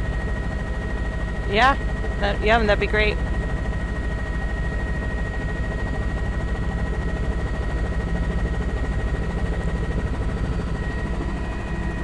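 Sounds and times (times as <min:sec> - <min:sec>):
helicopter rotor chopping: 0:00.0 - 0:12.0
high engine whine: 0:00.0 - 0:12.0.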